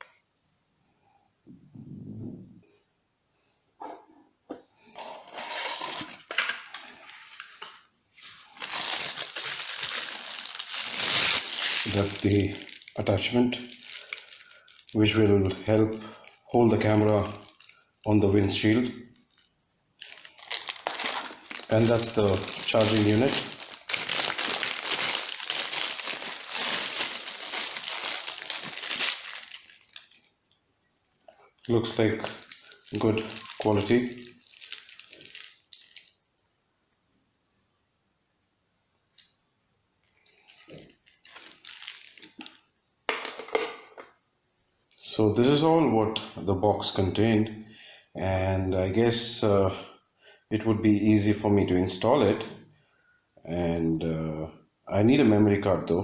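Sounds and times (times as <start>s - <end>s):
packaging rustling and crinkling: 4.9s - 30.3s, 31.5s - 36.2s, 40.0s - 44.0s.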